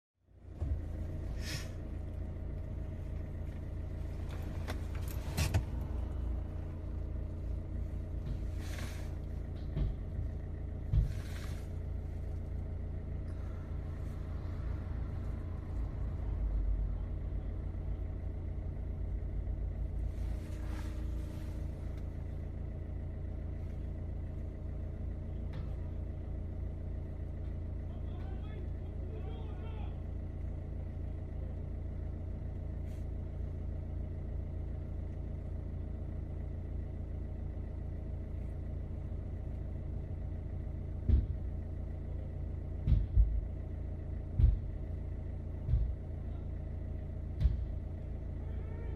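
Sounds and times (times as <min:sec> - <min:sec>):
vehicle engine droning: 0:00.2 - 0:48.9
sharp knocks: 0:42.8 - 0:43.5, 0:44.3 - 0:44.8.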